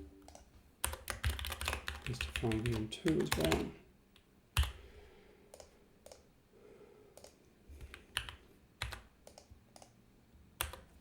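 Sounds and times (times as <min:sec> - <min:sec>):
keystrokes on computer keyboard: 0:00.2 - 0:04.8, 0:05.5 - 0:06.3, 0:07.2 - 0:10.0, 0:10.6 - 0:11.0.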